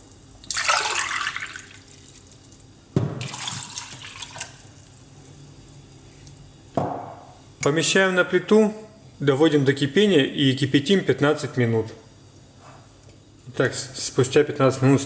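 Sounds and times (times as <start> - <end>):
water pouring into saucepan: 0.0 - 6.2.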